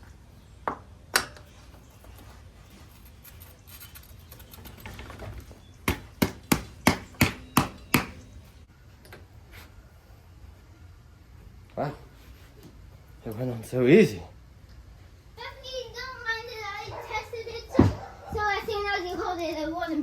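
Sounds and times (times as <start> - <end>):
hard knocks on bike part: 5.8 - 8.2.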